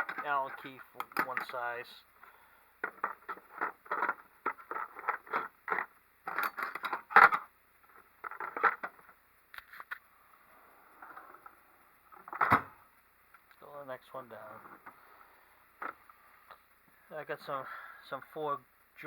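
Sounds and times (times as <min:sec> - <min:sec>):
metal tools clinking and scraping: 0:00.0 - 0:01.7, 0:02.8 - 0:07.5.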